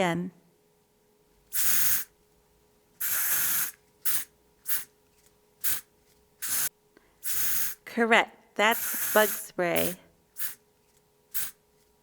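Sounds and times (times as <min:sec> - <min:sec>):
aerosol can spraying: 0:01.5 - 0:02.1, 0:03.0 - 0:04.9, 0:05.6 - 0:07.8, 0:08.7 - 0:10.6, 0:11.3 - 0:11.6.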